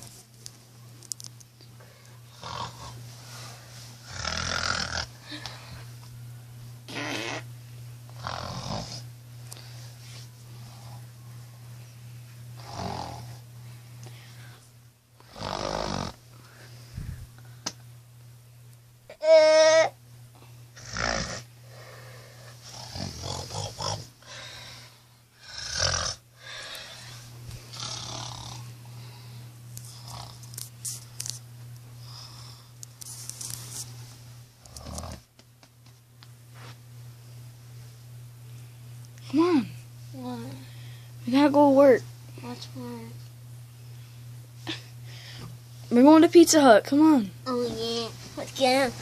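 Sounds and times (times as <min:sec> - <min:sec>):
steady low hum: 0:00.0 - 0:49.0
person snoring heavily: 0:02.3 - 0:03.0, 0:04.0 - 0:05.1, 0:08.2 - 0:09.0, 0:12.6 - 0:13.4, 0:15.3 - 0:16.2, 0:20.8 - 0:24.7, 0:25.4 - 0:28.6.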